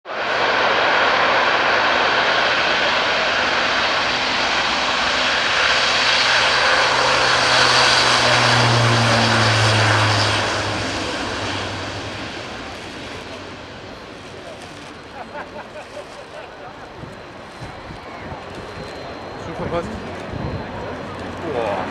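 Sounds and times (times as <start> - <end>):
turboprop engines roaring: 0.1 - 21.9.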